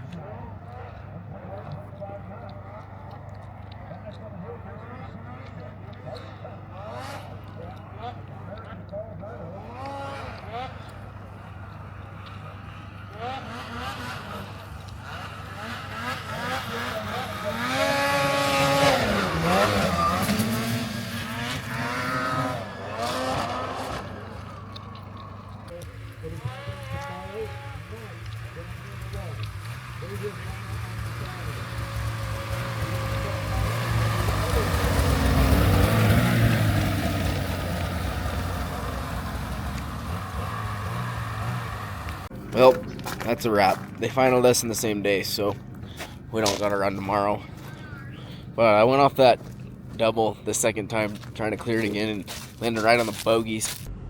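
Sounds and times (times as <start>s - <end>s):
snowmobile engine revving: 0.0s - 53.9s.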